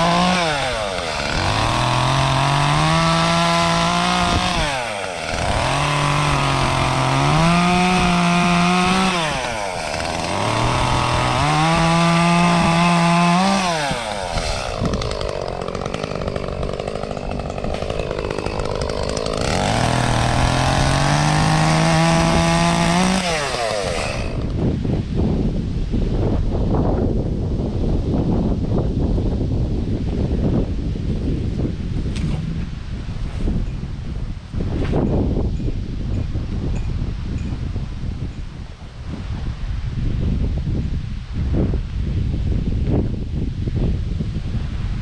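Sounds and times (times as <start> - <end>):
chainsaw cutting at high throttle: 0.0 - 24.7.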